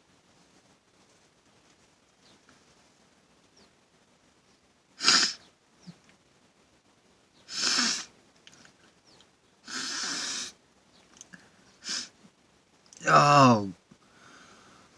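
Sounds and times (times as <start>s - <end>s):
soft burst of breath: 7.5s - 8.1s, 9.6s - 10.6s, 11.4s - 12.2s, 14.0s - 14.9s.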